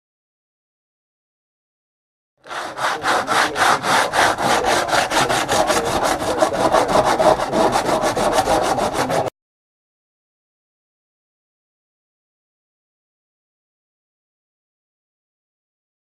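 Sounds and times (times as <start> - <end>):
sandpaper rubbing back and forth: 2.5 - 9.3.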